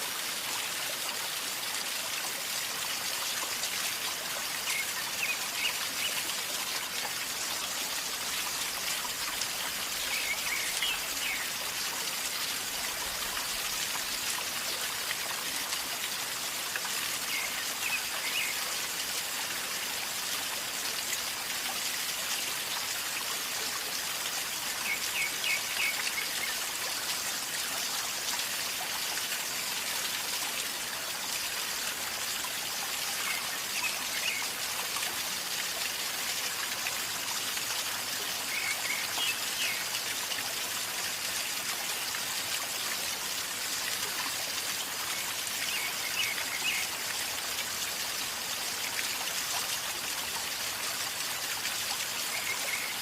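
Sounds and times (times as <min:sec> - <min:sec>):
river gurgling: 0:24.1 - 0:26.8.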